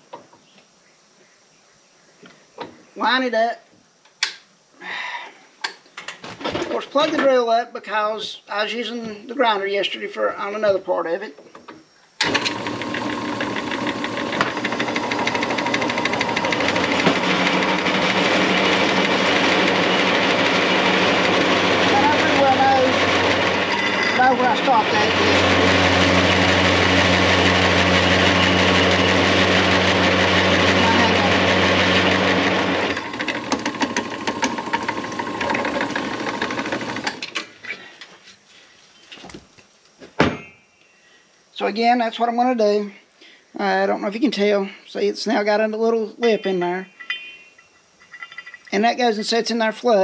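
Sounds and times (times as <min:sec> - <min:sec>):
sharp click: 0:04.0 - 0:04.5
drill press cutting metal: 0:12.2 - 0:37.3
faint steady whine: 0:37.2 - 0:50.0.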